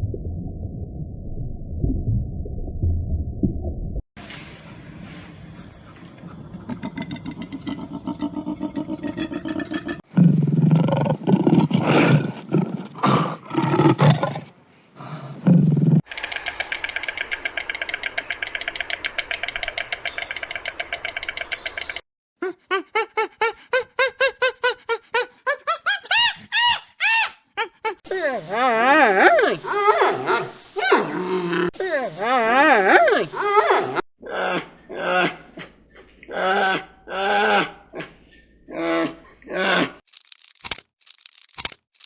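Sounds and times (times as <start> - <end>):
deep roaring calls: 16.1 - 22.0, 28.1 - 34.0
rapid clicking calls: 16.1 - 22.0, 28.1 - 34.0
rhythmic pulsing animal call: 16.1 - 22.0, 28.1 - 34.0.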